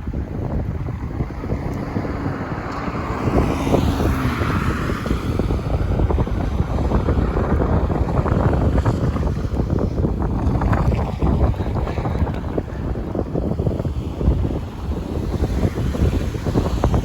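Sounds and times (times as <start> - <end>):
gusty wind buffeting microphone: 0.0 - 17.0
vehicle passing: 0.8 - 17.0.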